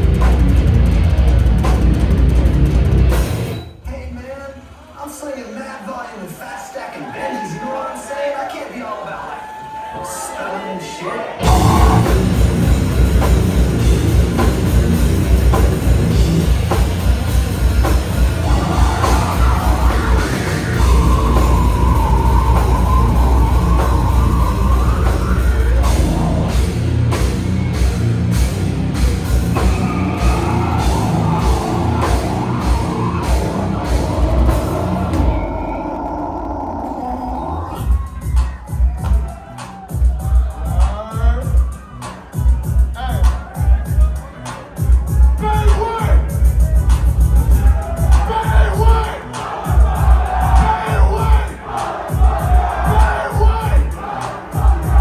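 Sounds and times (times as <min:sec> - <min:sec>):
bass guitar: 0:00.0 - 0:03.6, 0:11.4 - 0:38.4, 0:54.7 - 0:55.0
death metal band playing live: 0:00.0 - 0:03.7, 0:11.4 - 0:39.0
heavy distorted guitars: 0:00.0 - 0:04.7, 0:11.4 - 0:38.3
pounding drum kit: 0:00.0 - 0:04.7, 0:11.4 - 0:55.0.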